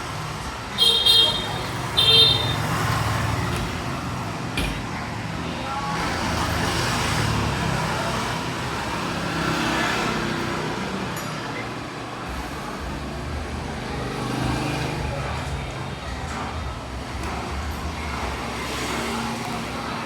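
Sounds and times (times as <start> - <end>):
road traffic rumbling: 0.0 - 20.0
car horn beeps: 0.8 - 2.8.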